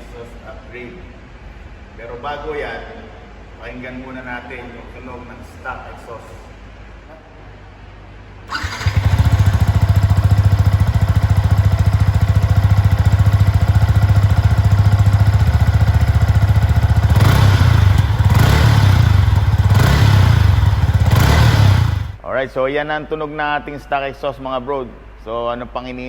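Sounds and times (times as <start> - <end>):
motorcycle engine idling and revving: 8.5 - 22.2.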